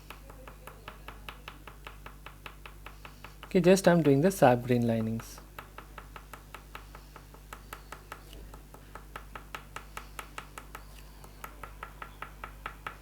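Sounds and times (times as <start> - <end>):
oil pastel tapping on paper: 0.0 - 13.0.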